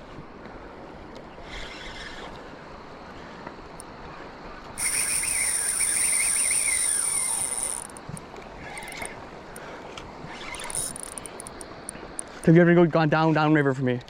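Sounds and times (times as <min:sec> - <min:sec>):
fishing reel drag buzzing: 0:04.8 - 0:09.1, 0:10.3 - 0:11.6, 0:12.2 - 0:12.5.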